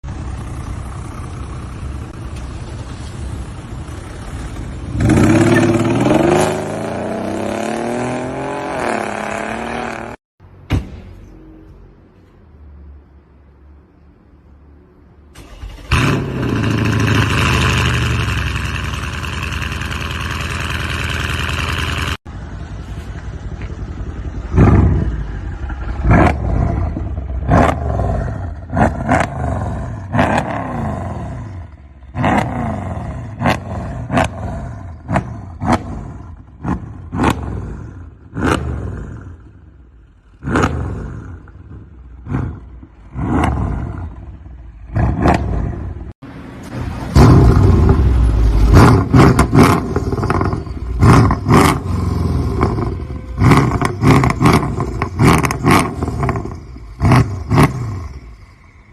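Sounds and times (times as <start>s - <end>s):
car engine starting and idling: 15.2s - 30.6s.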